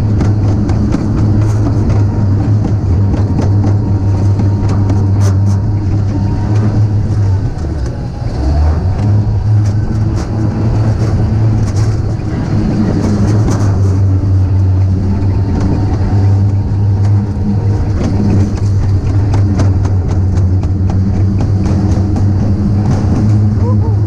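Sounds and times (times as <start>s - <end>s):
sled wheels rumbling on steel track: 0.0s - 24.0s.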